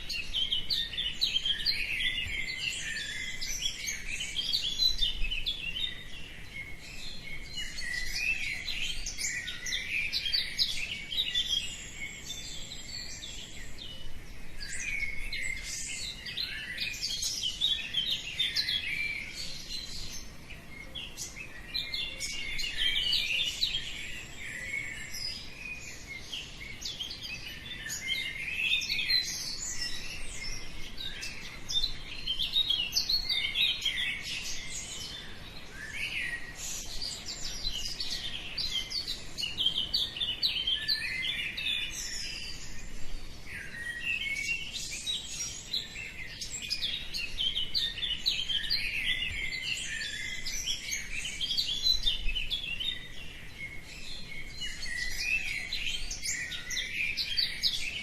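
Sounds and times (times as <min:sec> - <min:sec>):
many songbirds chirping: 0:00.0 - 0:58.0.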